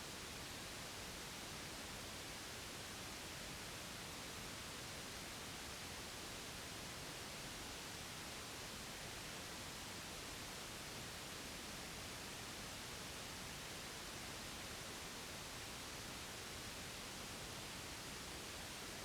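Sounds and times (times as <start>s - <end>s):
steady white noise hiss: 0.0s - 19.0s.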